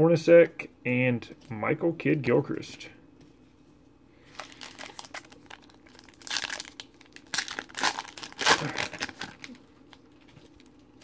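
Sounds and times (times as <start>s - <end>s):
foil wrapper crinkling and tearing: 4.2s - 11.0s.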